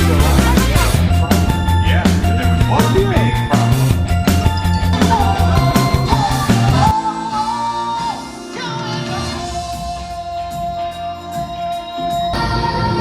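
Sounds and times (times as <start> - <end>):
sparse accompaniment: 0.0 - 6.9
drum beat: 0.0 - 7.0.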